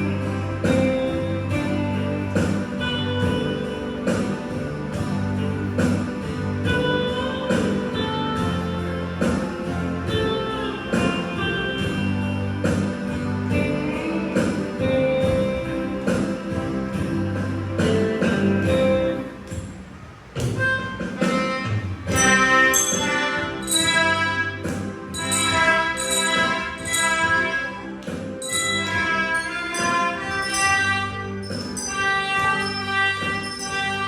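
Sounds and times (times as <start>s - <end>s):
sharp percussive strikes: 0.0s - 17.2s, 17.8s - 34.0s
melodica melody: 0.0s - 19.3s, 20.6s - 34.0s
low bass line: 0.0s - 19.5s
hand bells: 22.1s - 34.0s.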